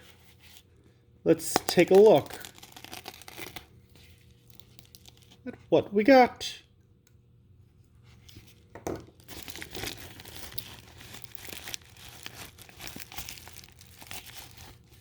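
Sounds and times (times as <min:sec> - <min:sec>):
packaging crinkled and torn: 0:01.4 - 0:05.4, 0:09.1 - 0:15.0.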